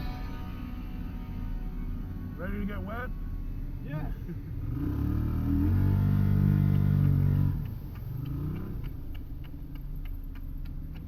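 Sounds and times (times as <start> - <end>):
side-by-side engine running: 0.0 - 11.0
light ticks: 6.6 - 11.0.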